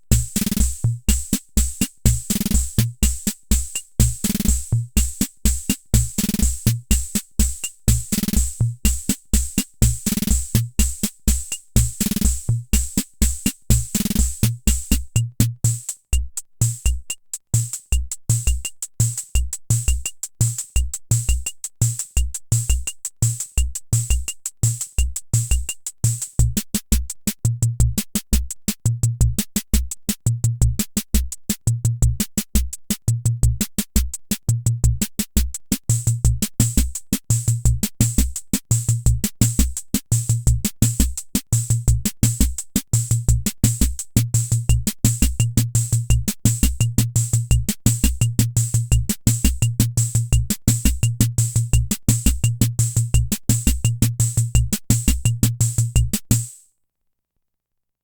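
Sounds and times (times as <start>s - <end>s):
drum machine clicks: 0.1s - 56.6s
kick drum thumps: 26.4s - 56.5s.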